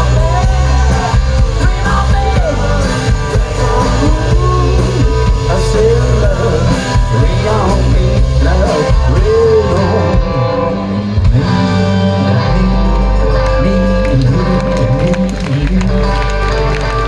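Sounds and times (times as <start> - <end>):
guitar bending notes: 0.0 - 17.0
steady bass: 0.0 - 17.0.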